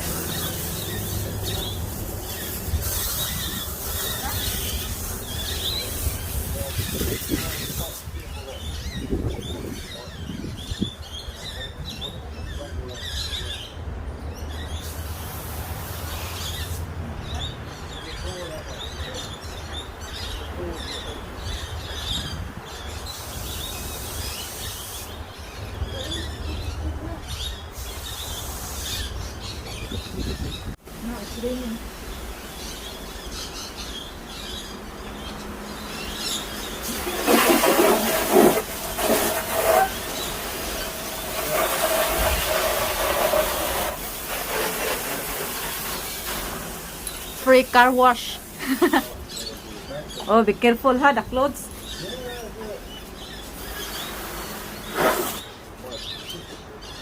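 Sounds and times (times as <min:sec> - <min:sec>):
hiss: 0:00.0 - 0:08.2, 0:14.8 - 0:16.9, 0:23.1 - 0:25.2, 0:27.7 - 0:29.2, 0:36.4 - 0:49.1, 0:53.5 - 0:55.6
birds chirping: 0:00.0 - 0:57.0.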